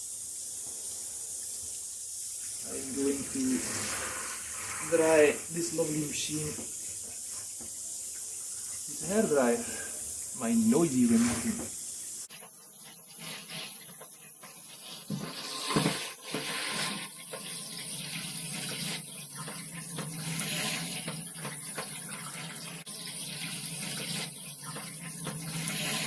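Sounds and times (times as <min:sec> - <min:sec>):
shower water running over metal: 0:00.0 - 0:26.0.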